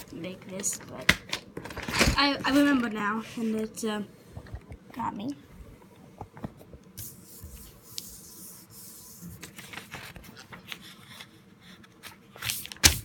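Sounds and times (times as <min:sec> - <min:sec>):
paper folding and rustling: 0:08.8 - 0:13.0.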